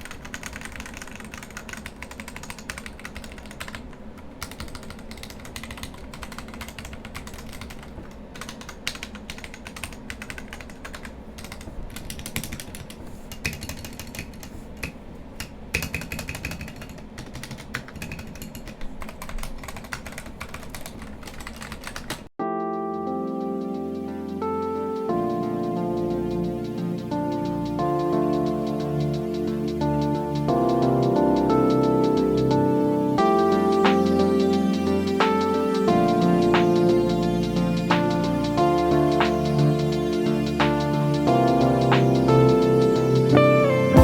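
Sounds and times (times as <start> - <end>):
mechanical keyboard typing: 0.0 - 22.3
music: 22.4 - 44.0.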